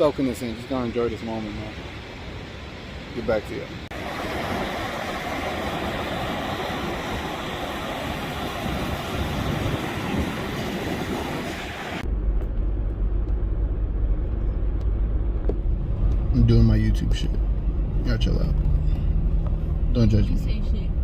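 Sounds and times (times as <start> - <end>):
surf at the shore: 0.0 - 12.0
wind rushing: 1.7 - 12.1
car rumbling on road: 3.8 - 21.0.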